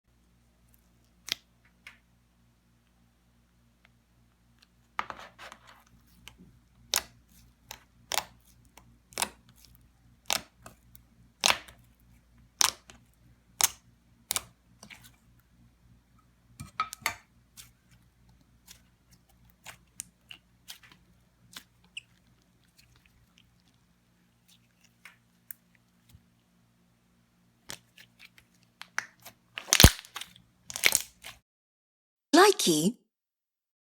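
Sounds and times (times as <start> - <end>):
slime clicking and popping: 28.8 - 31.1.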